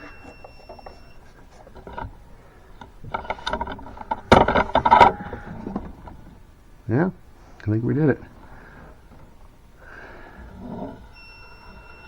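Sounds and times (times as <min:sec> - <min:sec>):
mechanical clicks and knocks: 0:00.0 - 0:06.7.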